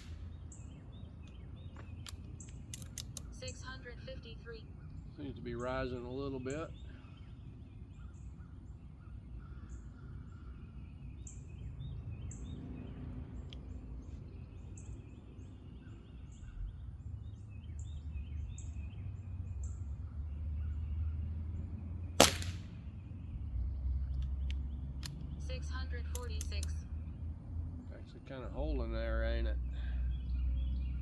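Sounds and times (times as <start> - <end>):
small birds chirping: 0.0 - 31.0
air pistol shot: 22.2 - 22.7.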